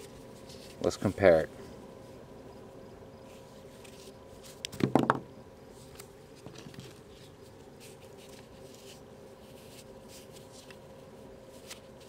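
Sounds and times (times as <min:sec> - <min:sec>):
faint handling rustles: 0:00.0 - 0:04.7, 0:05.7 - 0:12.0
knocks and clicks of handling: 0:04.7 - 0:05.3.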